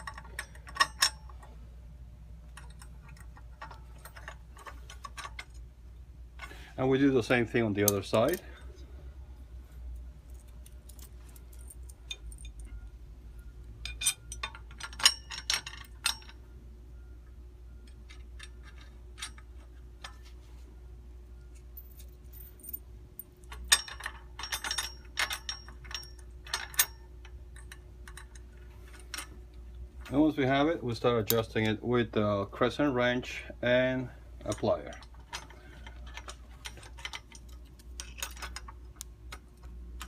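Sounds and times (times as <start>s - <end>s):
light metal clinks of bolts: 0.0s - 1.6s, 13.7s - 16.4s, 21.5s - 29.4s, 31.2s - 31.8s.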